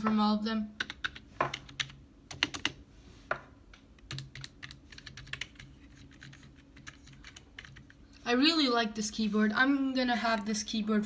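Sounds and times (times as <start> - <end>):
keyboard keys clicking: 0.8 - 2.8, 4.1 - 8.0.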